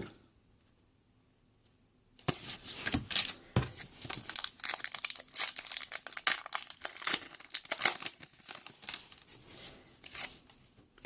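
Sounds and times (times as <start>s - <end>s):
foil wrapper tearing and crinkling: 4.0s - 9.3s.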